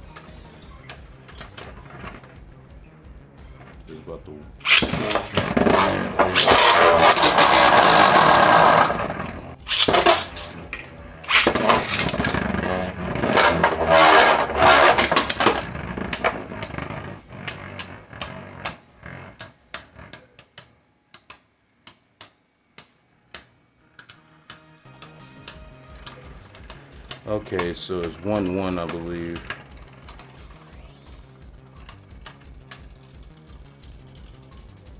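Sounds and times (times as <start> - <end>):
spinning tops clashing: 4.6 - 16.4.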